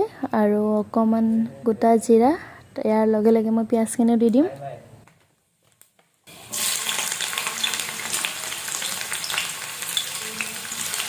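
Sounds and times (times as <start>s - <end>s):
hot oil sizzling and crackling: 6.3s - 11.0s.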